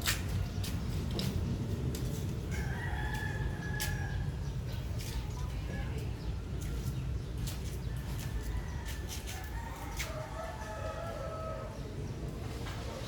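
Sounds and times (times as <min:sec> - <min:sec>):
steady low rumble: 0:00.0 - 0:05.0
rooster crowing: 0:08.4 - 0:11.8.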